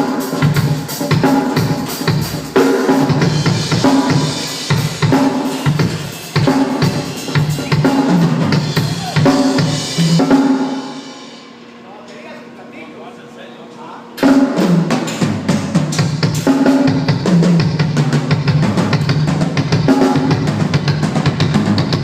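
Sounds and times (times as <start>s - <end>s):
bass drum: 0.0s - 10.6s.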